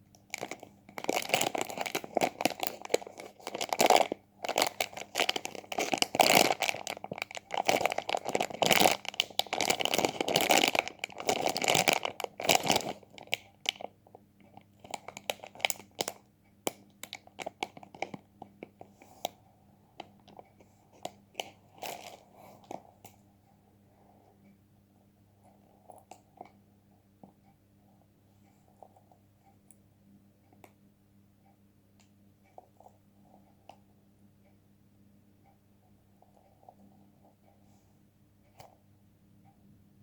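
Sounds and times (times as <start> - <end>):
crunching and crinkling: 0.3 - 13.8.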